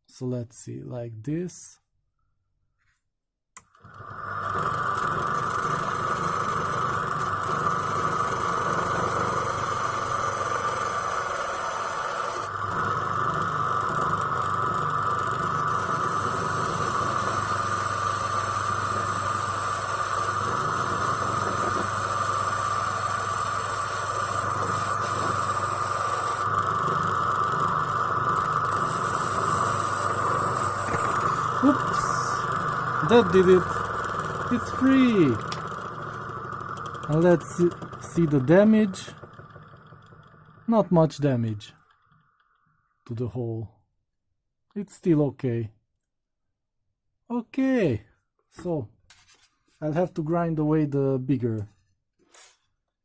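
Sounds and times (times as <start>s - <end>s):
grinding wheel motor whine: 3.8s - 42.9s
grinding hiss on metal: 15.4s - 39.2s.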